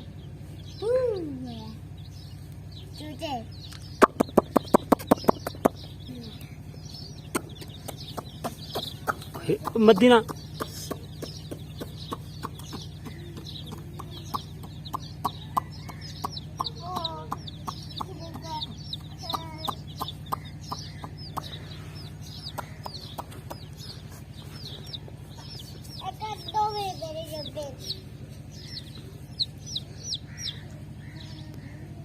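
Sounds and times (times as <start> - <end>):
chicks peeping: 0.0 - 32.0
lower bird calls: 0.0 - 32.0
steady low hum: 0.0 - 32.0
sharp ticks: 3.6 - 6.0, 7.3 - 23.9.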